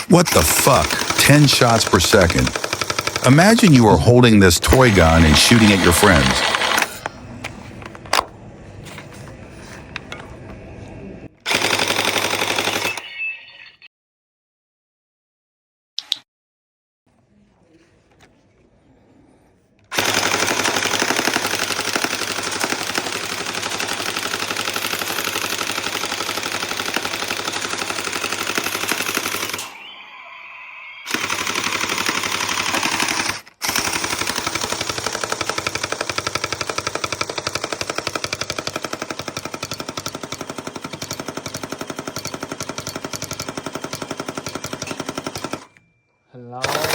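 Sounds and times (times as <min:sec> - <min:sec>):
gel blaster rapid fire: 0:00.0 - 0:07.0, 0:19.9 - 0:40.4.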